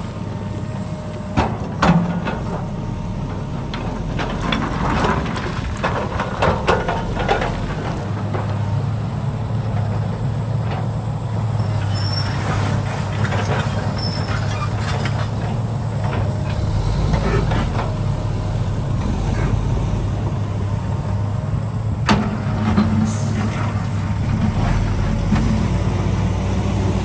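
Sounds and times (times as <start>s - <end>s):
diesel engine of heavy machinery: 0.0s - 27.0s.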